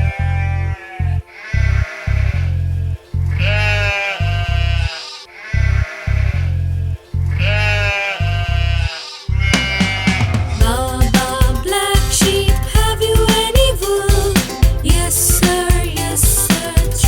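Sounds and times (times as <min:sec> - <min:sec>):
sheep bleating: 0:00.2 - 0:02.5, 0:03.4 - 0:06.5, 0:07.3 - 0:10.4
nursery rhyme backing music: 0:00.8 - 0:17.0.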